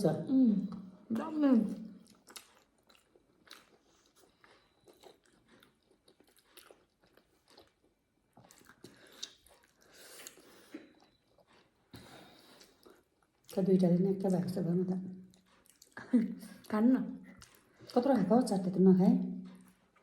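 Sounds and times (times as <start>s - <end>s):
people chewing food: 0.0s - 20.0s
bites and mouth smacks: 2.0s - 10.8s.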